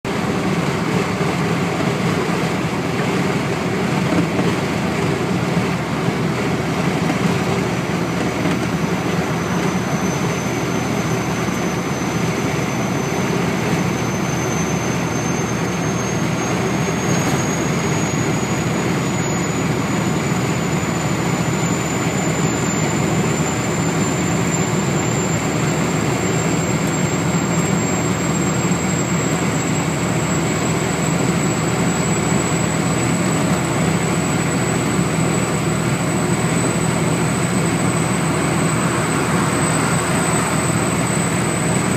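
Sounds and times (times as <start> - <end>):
diesel engine running: 0.0 - 41.9
turbocharger whistle: 8.8 - 41.9.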